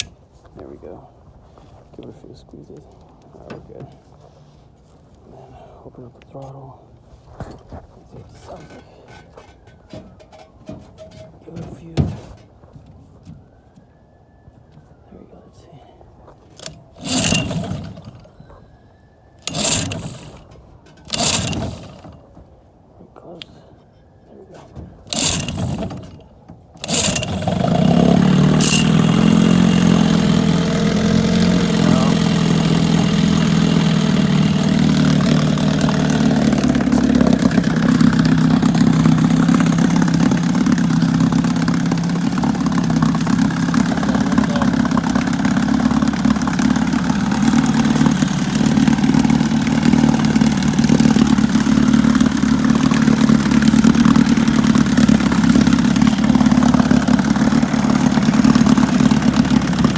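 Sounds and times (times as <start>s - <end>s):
outboard motor running: 16.6s - 18.6s, 19.4s - 22.4s, 25.0s - 59.9s.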